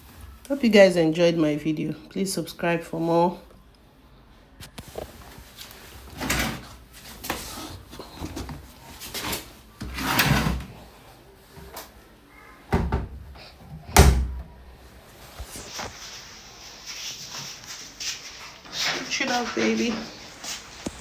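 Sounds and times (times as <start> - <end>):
rustling handling noise: 4.5 - 21.0.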